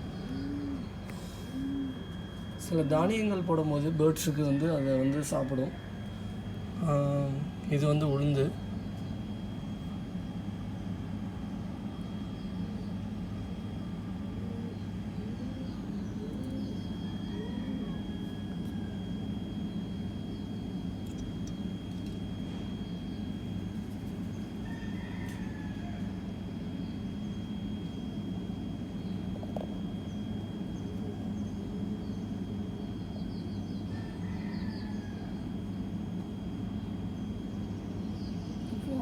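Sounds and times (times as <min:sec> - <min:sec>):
faint bird chirps: 0:00.0 - 0:02.6, 0:14.5 - 0:18.9, 0:28.9 - 0:35.9
thin high whine: 0:00.0 - 0:14.7
low mechanical hum: 0:00.0 - 0:39.0.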